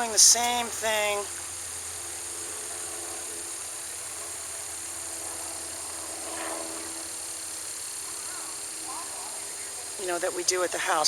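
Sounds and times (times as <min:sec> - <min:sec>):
distant voice calling: 0:00.0 - 0:01.3, 0:08.1 - 0:11.0
faint steady hum: 0:00.0 - 0:11.0
steady hiss: 0:00.0 - 0:11.0.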